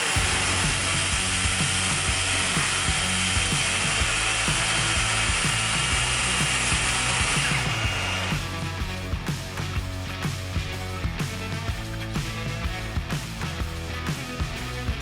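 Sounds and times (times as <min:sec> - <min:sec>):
power tool rattling: 0:00.0 - 0:08.8.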